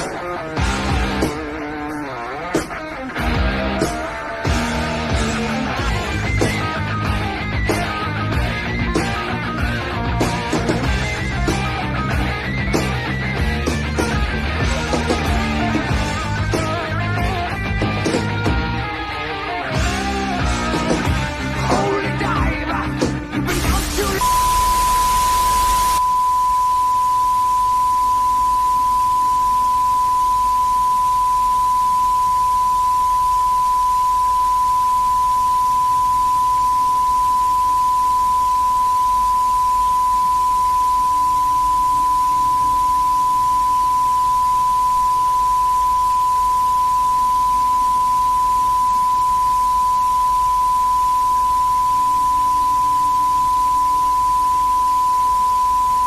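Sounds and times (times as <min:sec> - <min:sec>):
videotape hiss: 0:23.4 - 0:26.0
steady test tone: 0:24.2 - 0:56.0.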